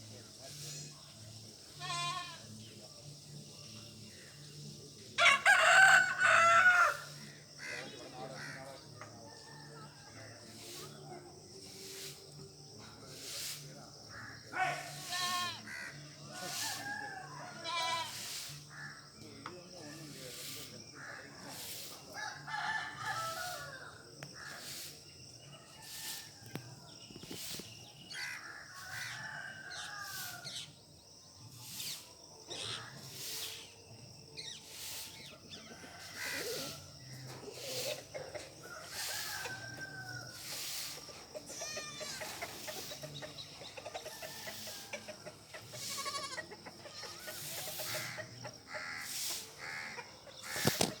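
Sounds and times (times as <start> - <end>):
rooster crowing: 5.2 - 7.2, 22.2 - 24.0, 28.7 - 30.6, 38.6 - 40.7
chickens clucking: 35.7 - 51.0.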